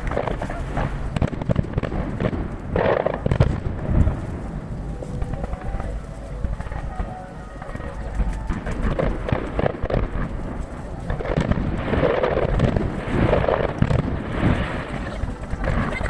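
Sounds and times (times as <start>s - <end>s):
distant fireworks bursting: 0.0s - 16.0s.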